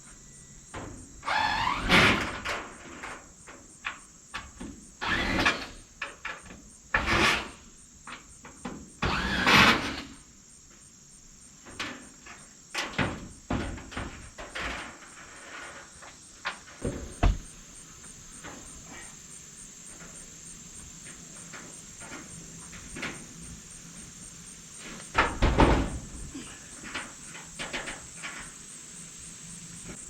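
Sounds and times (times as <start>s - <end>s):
wooden board scraping: 14.2s - 17.6s
wooden board knocking: 16.8s - 17.5s.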